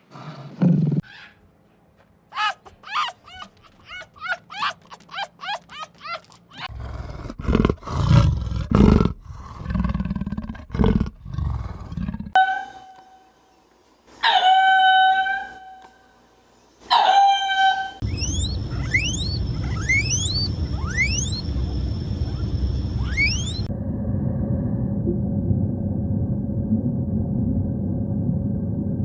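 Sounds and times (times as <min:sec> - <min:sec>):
animal yelping calls: 0:01.0 - 0:01.4, 0:02.3 - 0:06.8, 0:16.9 - 0:23.7
long high animal calls: 0:02.4 - 0:06.7, 0:17.6 - 0:23.7
animal low roars: 0:06.7 - 0:12.4.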